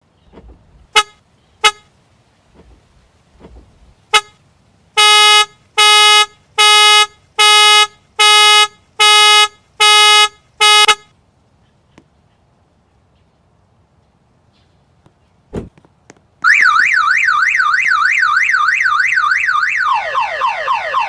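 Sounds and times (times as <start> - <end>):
car horn chirp: 0.9 - 1.9, 4.1 - 4.4, 5.0 - 11.1
car horn honking: 0.9 - 1.9, 4.1 - 4.4, 5.0 - 11.1.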